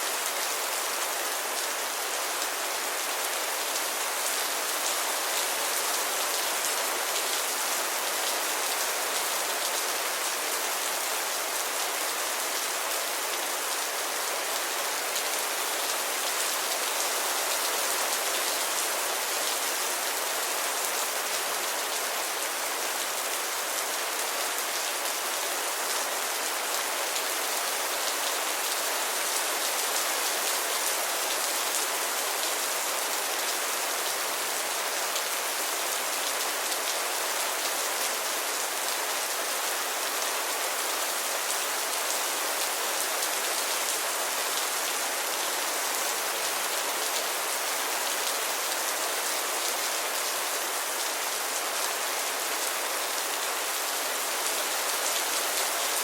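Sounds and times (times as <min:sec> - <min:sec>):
steady rainfall: 0:00.0 - 0:56.0.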